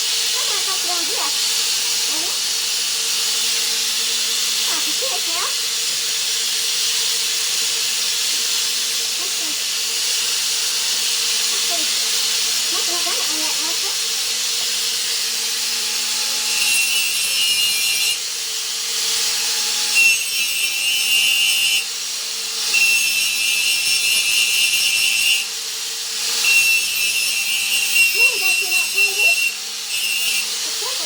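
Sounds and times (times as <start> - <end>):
power tool whining on steel: 0.0 - 31.0.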